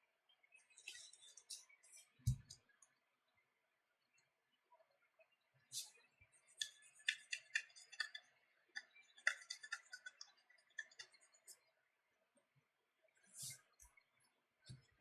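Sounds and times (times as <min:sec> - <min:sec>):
fingers tapping touchscreen: 0:06.6 - 0:11.5.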